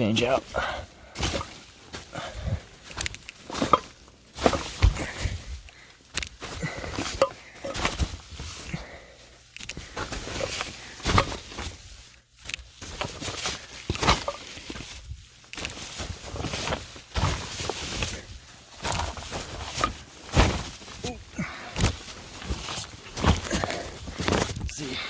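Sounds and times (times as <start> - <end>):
scrapes and thumps: 1.0 - 8.7, 9.6 - 24.8
plastic sheet crinkling: 9.6 - 24.7.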